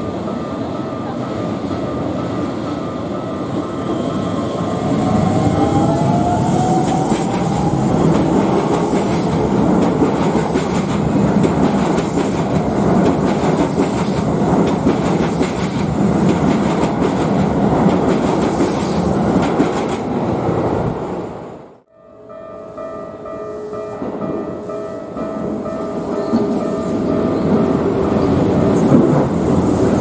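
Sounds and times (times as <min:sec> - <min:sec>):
electric train rumble: 0:00.0 - 0:21.4, 0:23.7 - 0:30.0.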